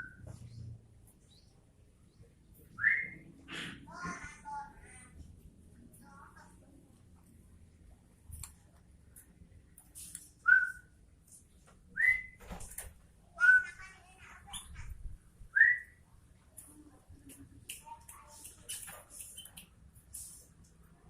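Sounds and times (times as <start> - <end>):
bird whistled calls: 10.4 - 10.9, 12.0 - 12.4
bird chattering: 18.2 - 19.8.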